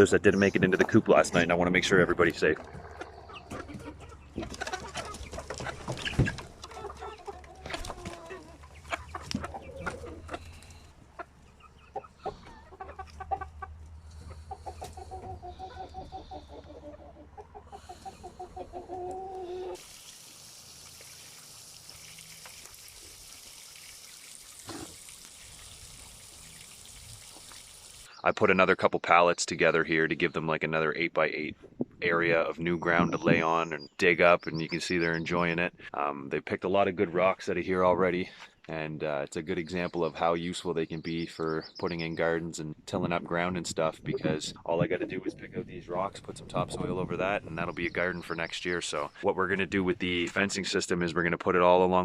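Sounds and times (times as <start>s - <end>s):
chickens clucking: 0.0s - 19.8s, 41.6s - 49.3s.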